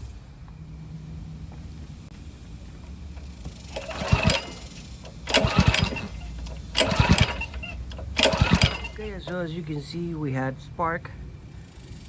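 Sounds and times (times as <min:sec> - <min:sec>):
engine recoil starter pulls: 0:03.2 - 0:09.6.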